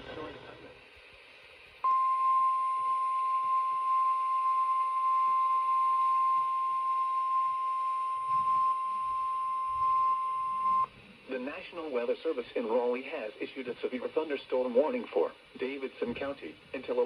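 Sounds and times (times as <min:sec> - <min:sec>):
radio background hiss: 0:00.0 - 0:01.8, 0:10.8 - 0:17.0
steady alarm tone: 0:01.8 - 0:10.9.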